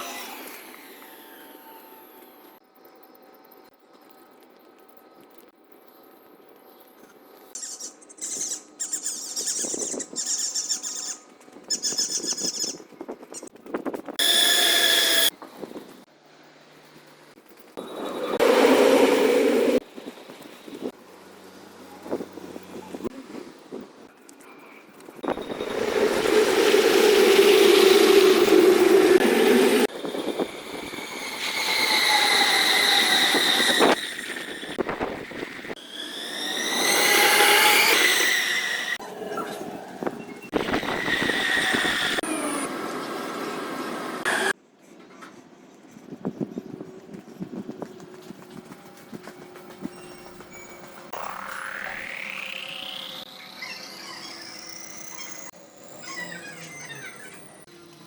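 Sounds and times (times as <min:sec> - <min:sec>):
high whining tones: 0:14.2 - 0:15.3, 0:25.2 - 0:39.0, 0:49.8 - 0:58.0
trains rumbling past: 0:17.8 - 0:20.4, 0:25.3 - 0:34.7.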